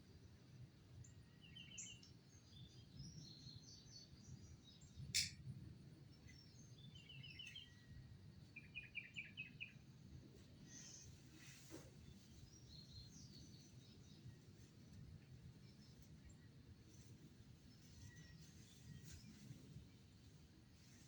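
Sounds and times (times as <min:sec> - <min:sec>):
faint birdsong chirping trills: 0:00.1 - 0:21.0
sharp click: 0:05.1 - 0:05.4.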